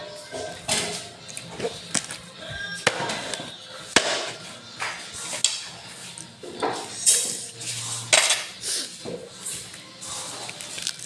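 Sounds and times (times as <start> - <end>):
dishes and utensils clattering: 0.0 - 11.0.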